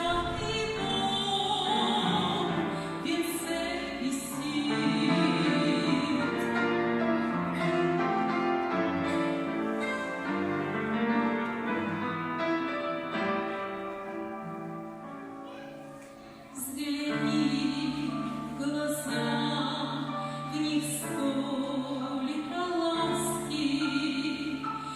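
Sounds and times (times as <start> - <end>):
piano accompaniment: 0.0 - 24.9
person singing: 16.3 - 24.9.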